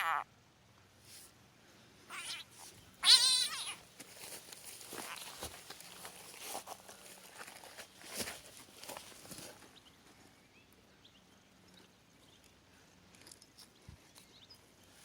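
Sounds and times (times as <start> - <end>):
faint rustles: 1.0 - 10.5.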